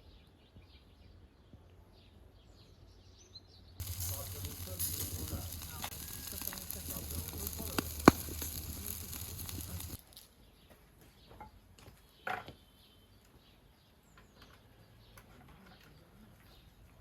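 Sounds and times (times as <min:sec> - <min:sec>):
fish sizzling on a grill: 0:03.8 - 0:10.2
sharp crackle: 0:03.8 - 0:10.3.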